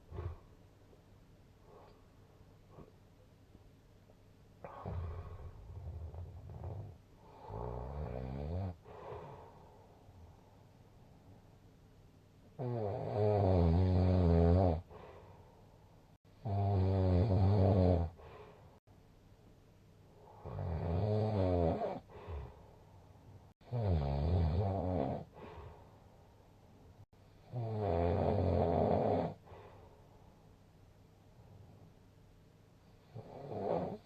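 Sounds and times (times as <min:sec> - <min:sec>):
quiet breathing: 0:00.0 - 0:03.6, 0:04.6 - 0:11.8, 0:14.4 - 0:18.9, 0:21.8 - 0:23.7, 0:24.7 - 0:27.6, 0:29.2 - 0:30.6
person snoring: 0:04.6 - 0:09.6, 0:12.6 - 0:15.0, 0:16.4 - 0:18.4, 0:23.6 - 0:25.4, 0:27.5 - 0:29.4, 0:33.1 - 0:34.0.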